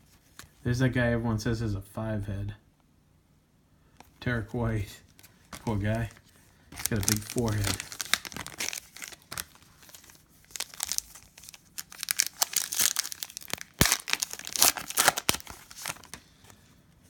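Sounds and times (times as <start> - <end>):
plastic foil wrapper crinkling: 5.1 - 16.2.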